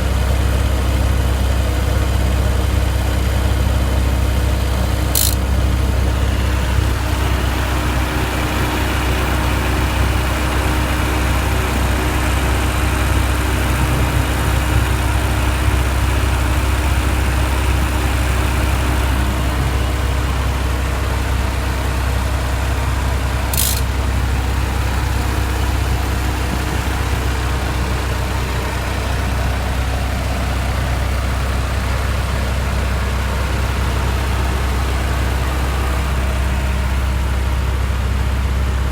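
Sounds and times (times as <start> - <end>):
car engine idling: 0.0 - 38.9
compressor rapid ticking: 2.7 - 37.6
sharp click: 5.2 - 5.5, 23.5 - 23.9.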